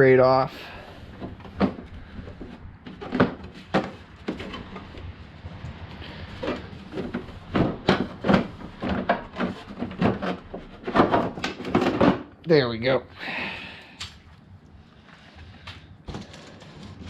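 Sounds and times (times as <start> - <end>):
plastic cover clunking and knocking: 1.1 - 5.0, 6.4 - 12.3.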